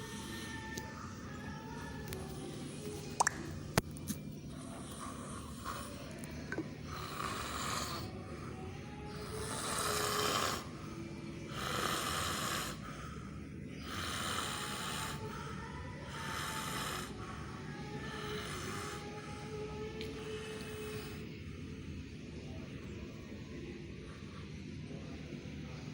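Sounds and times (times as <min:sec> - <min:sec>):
baby snoring: 0:00.0 - 0:01.2, 0:04.5 - 0:06.0, 0:06.9 - 0:08.2, 0:09.0 - 0:10.8, 0:11.5 - 0:13.2, 0:13.8 - 0:21.2.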